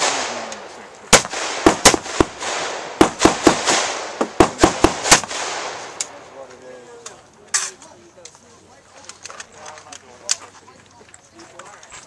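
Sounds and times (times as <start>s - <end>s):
rifle shots with echo: 0.0s - 6.4s.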